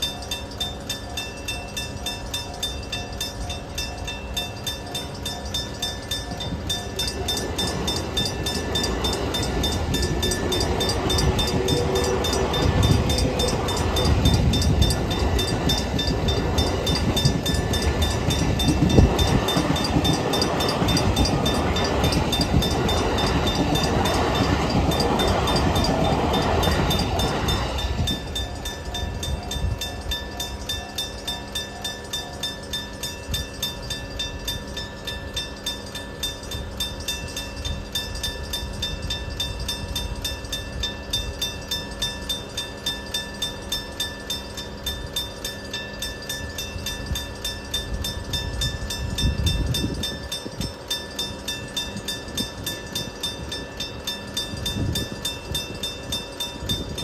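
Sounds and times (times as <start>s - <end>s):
level crossing bell ringing: 0.0s - 33.4s.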